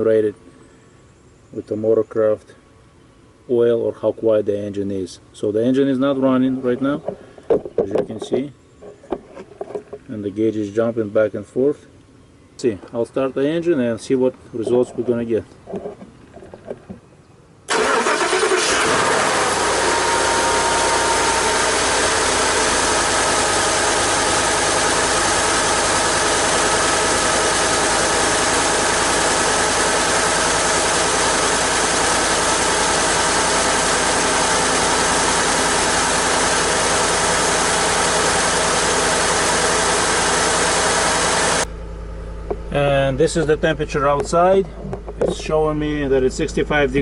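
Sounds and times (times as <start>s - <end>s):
engine idling: 17.7s - 47.0s.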